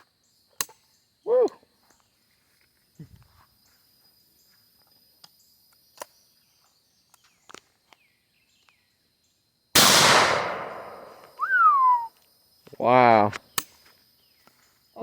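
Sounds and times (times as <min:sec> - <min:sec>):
gunshot with echo: 0:09.8 - 0:11.3.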